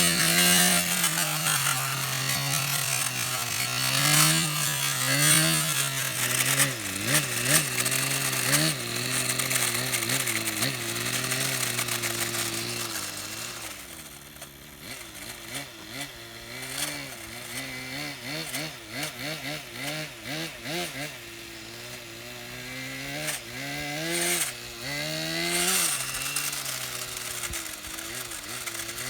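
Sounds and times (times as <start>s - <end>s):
running gear grinding: 0.0s - 16.2s, 24.1s - 29.0s
toy car motor whining: 0.0s - 29.0s.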